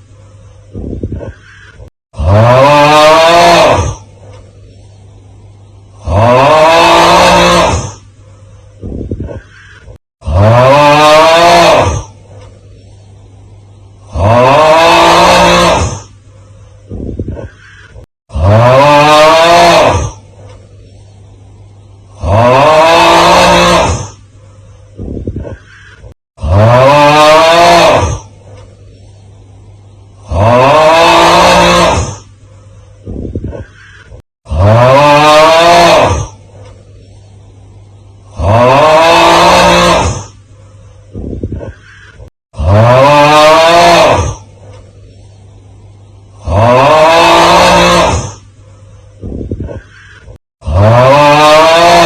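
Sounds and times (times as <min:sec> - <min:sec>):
steady low hum: 0:00.0 - 0:18.9, 0:19.6 - 0:27.0, 0:27.8 - 0:35.0, 0:35.9 - 0:38.9, 0:39.5 - 0:43.0, 0:44.0 - 0:47.0, 0:47.7 - 0:50.4
snoring rasp: 0:01.2 - 0:04.4, 0:05.9 - 0:08.1, 0:09.2 - 0:12.3, 0:14.0 - 0:16.2, 0:17.3 - 0:20.4, 0:22.1 - 0:24.2, 0:25.4 - 0:28.3, 0:30.2 - 0:32.3, 0:33.5 - 0:36.4, 0:38.3 - 0:40.4, 0:41.6 - 0:44.5, 0:46.4 - 0:48.5, 0:49.7 - 0:52.0
low hum: 0:03.6 - 0:06.5, 0:11.7 - 0:14.6, 0:20.1 - 0:22.6, 0:28.2 - 0:30.3, 0:36.3 - 0:38.4.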